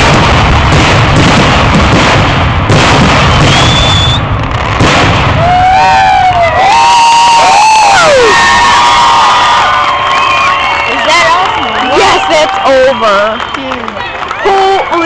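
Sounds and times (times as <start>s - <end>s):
fireworks booms and crackle: 0.0s - 10.4s
people shouting and whooping: 5.4s - 15.0s.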